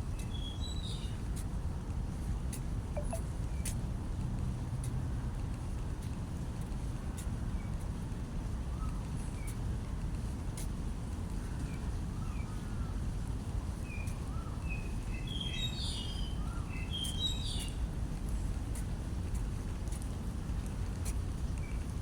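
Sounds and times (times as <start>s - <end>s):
small birds chirping: 14.0s - 17.8s.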